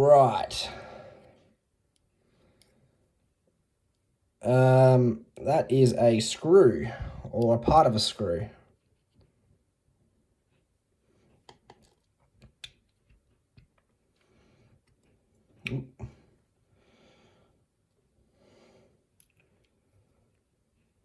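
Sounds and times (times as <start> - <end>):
soft breathing: 14.1 - 15.0, 16.0 - 20.4.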